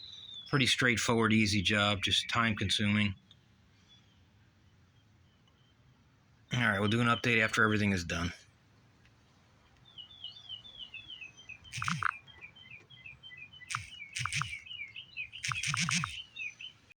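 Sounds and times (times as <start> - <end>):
birds chirping: 0.0 - 17.0
loud sharp bird calls: 9.8 - 16.9.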